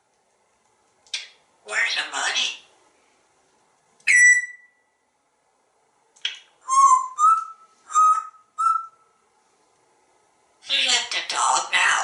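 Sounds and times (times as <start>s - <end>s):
parrot whistling: 4.0s - 4.8s, 6.6s - 9.1s
parrot chirp: 4.0s - 5.0s, 6.6s - 9.1s.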